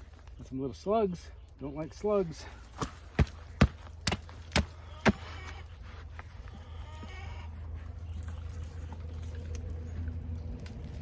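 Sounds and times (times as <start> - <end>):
farm animal bleating: 4.7 - 5.8, 6.4 - 7.8.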